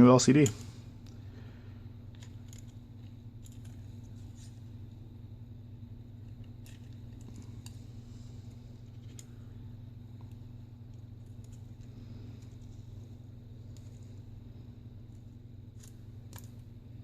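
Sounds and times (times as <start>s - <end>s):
low electrical hum: 0.0s - 17.0s
faint clicks of handled parts: 2.0s - 4.6s, 8.8s - 9.4s, 15.1s - 16.6s.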